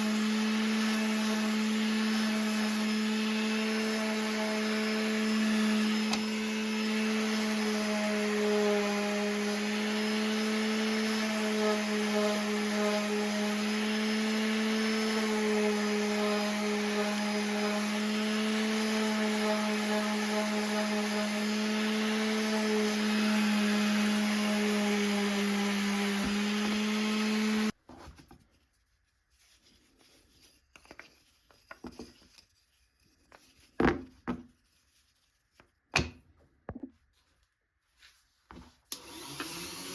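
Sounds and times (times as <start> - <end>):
power tool motor humming: 0.0 - 27.8, 38.9 - 39.9.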